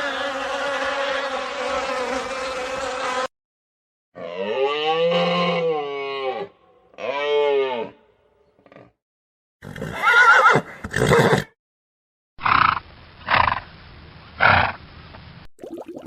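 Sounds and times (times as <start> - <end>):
horse neighing: 9.6 - 11.5.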